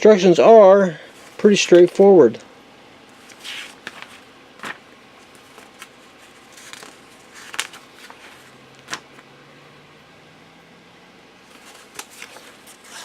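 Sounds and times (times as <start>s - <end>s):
paper pages rustling: 3.2s - 9.3s, 11.4s - 13.0s.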